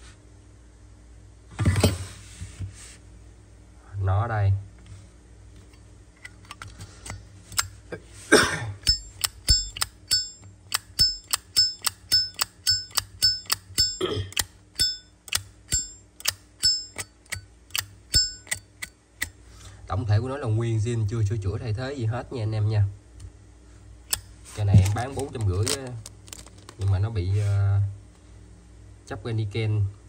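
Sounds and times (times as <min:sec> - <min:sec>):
lighter lid clicking open and shut: 0:10.7 - 0:19.3
scraping noises: 0:26.7 - 0:27.7.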